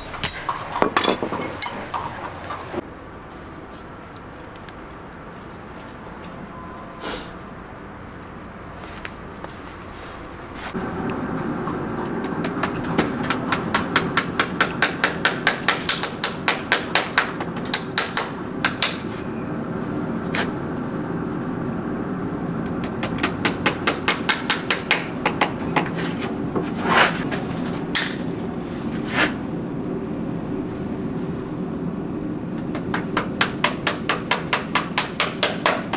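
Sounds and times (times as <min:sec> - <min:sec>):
steady background hum: 0:00.0 - 0:35.9
hammer tapping: 0:12.0 - 0:19.1, 0:22.6 - 0:26.1, 0:32.6 - 0:35.9.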